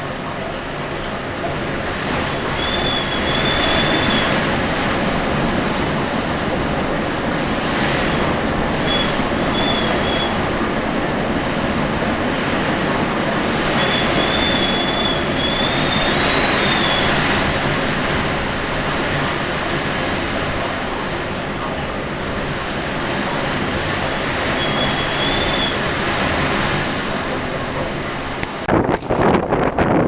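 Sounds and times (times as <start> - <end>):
strong wind blowing: 0.0 - 30.0
high wind whistle: 2.2 - 4.8, 8.6 - 10.8, 13.5 - 17.8, 24.4 - 26.0.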